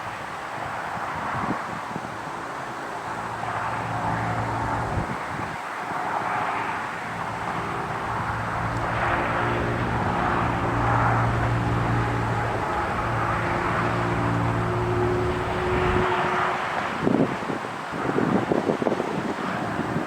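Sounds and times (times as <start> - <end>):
rushing noise: 2.7 - 18.3
warning siren winding down hum: 3.0 - 5.2, 5.9 - 16.9.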